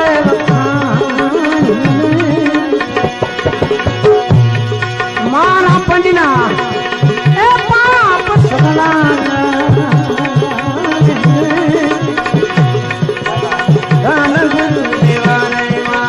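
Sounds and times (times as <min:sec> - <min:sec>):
tabla rhythm: 0:00.0 - 0:16.0
sliding melody: 0:01.6 - 0:05.3.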